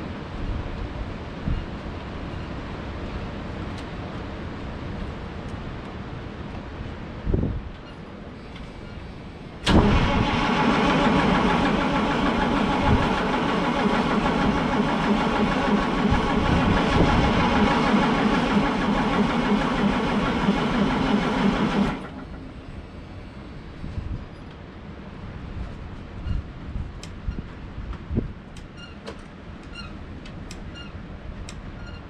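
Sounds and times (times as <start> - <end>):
diesel engine cranking by starter: 9.6 - 22.8.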